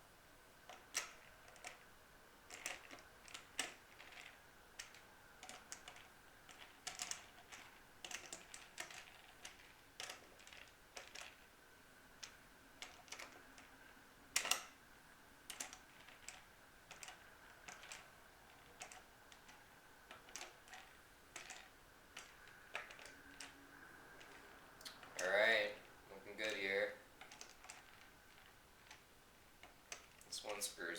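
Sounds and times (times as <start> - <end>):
screws clicking and tapping: 2.5 - 11.5, 15.5 - 23.6.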